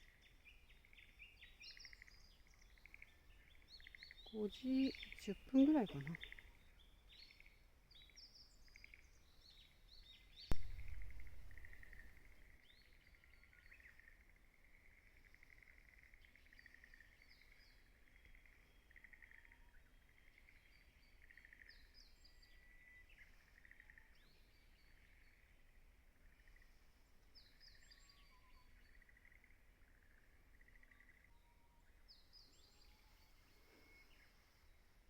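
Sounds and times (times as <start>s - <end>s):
small birds chirping: 0.0s - 25.7s
sudden knock: 10.5s - 12.1s
low rumble: 10.5s - 12.5s.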